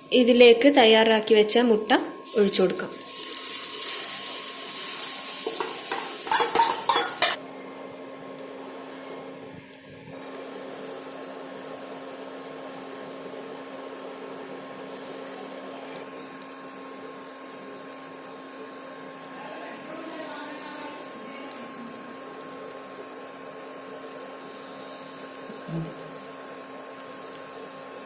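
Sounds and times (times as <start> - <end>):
egg sizzling on hot pan: 2.2 - 7.4, 21.5 - 28.0
spoon scraping a bowl: 5.4 - 7.4.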